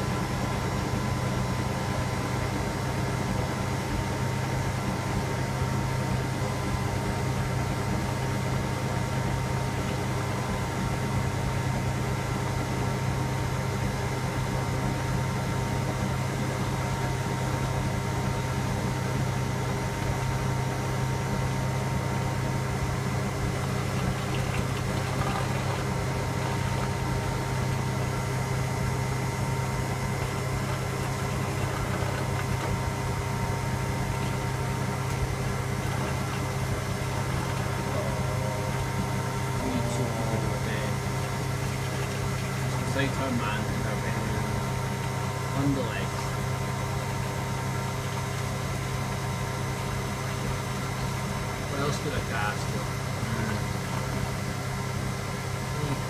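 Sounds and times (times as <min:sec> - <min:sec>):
washing machine humming: 0:00.0 - 0:56.0
whining tones: 0:31.1 - 0:43.0.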